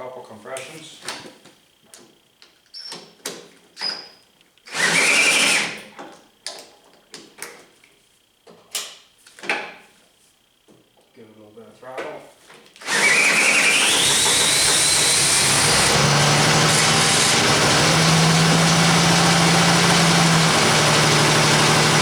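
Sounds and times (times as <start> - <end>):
drill cranking an engine: 4.7 - 5.8, 12.8 - 22.0.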